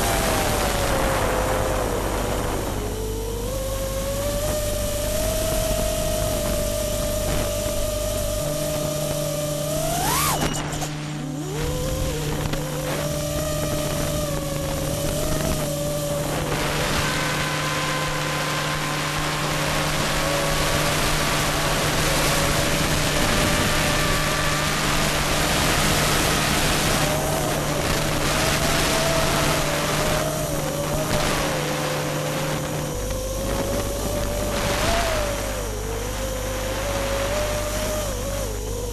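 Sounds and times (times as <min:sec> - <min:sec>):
quadcopter motors whining: 0:00.0 - 0:38.9
rushing wind noise: 0:00.0 - 0:38.9
steady low hum: 0:00.0 - 0:38.9.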